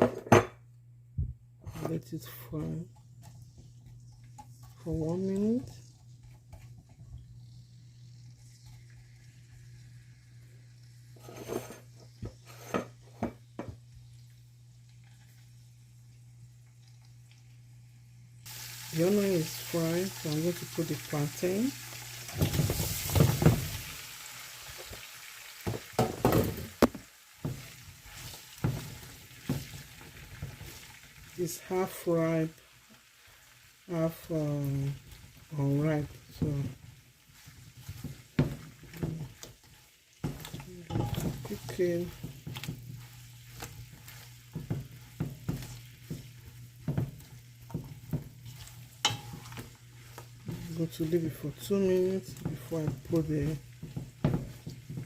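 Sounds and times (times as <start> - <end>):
plantain sizzling in hot oil: 2.5 - 55.0
knocks and clatters against pot: 25.6 - 27.7, 40.2 - 43.0, 52.4 - 55.0.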